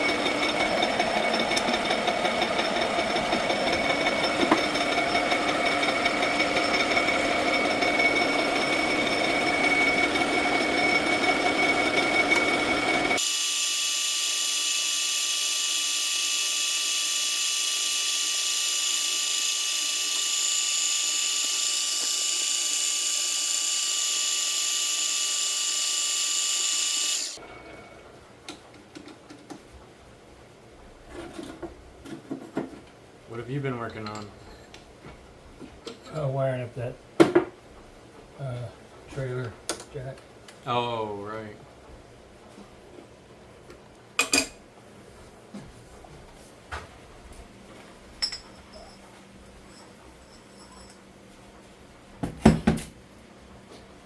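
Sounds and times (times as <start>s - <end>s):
power tool running: 0.0s - 27.8s.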